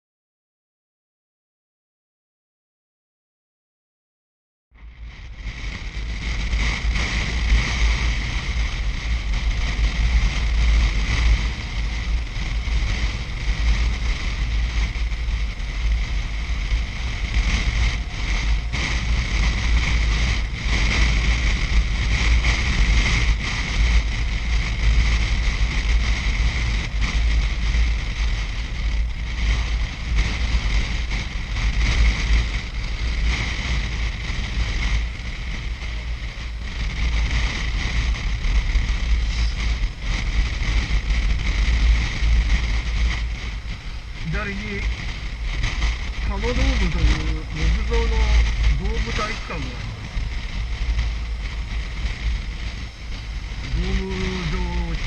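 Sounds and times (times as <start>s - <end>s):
motorcycle running noise: 4.8s - 55.0s
wind buffeting microphone: 4.8s - 55.0s.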